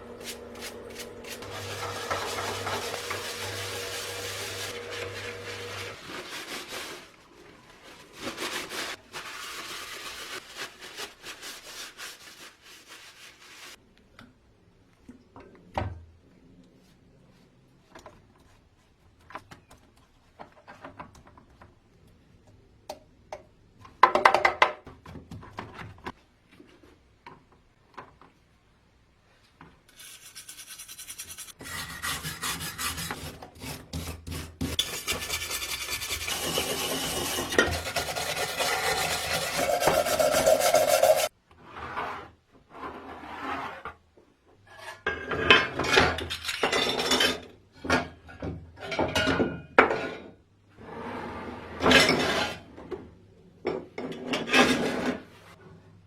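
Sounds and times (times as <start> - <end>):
short scrapes and knocks: 30.0 - 44.0
hand abrasive rasping on metal part: 34.8 - 41.3.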